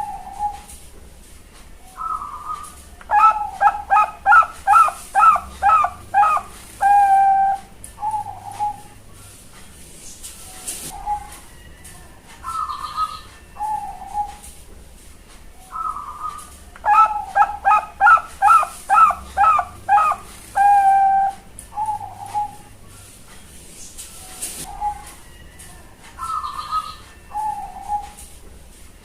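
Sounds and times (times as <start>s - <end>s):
dove cooing: 0.0s - 0.7s, 2.0s - 9.1s, 10.9s - 11.5s, 12.4s - 14.5s, 15.7s - 22.8s, 24.6s - 25.2s, 26.2s - 28.3s.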